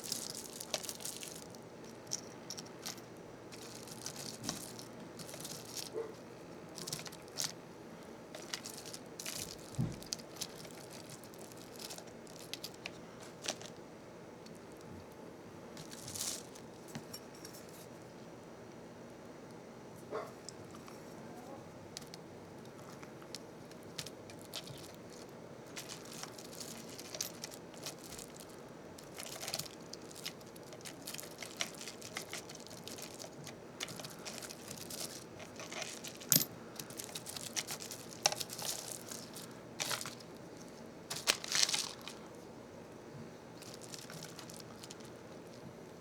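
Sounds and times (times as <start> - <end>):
plastic packaging crinkling: 0.0 - 2.1, 2.9 - 6.0, 6.7 - 7.6, 8.4 - 13.8, 15.8 - 16.7, 23.7 - 42.3, 43.6 - 45.6.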